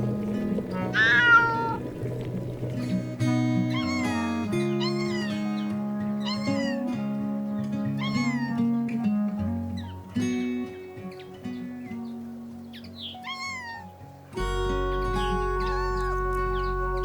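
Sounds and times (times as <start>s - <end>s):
gentle background music: 0.0s - 17.0s
cat meowing: 0.8s - 1.8s, 3.7s - 5.6s, 6.2s - 6.9s, 8.0s - 8.6s, 13.1s - 13.9s, 15.6s - 16.0s.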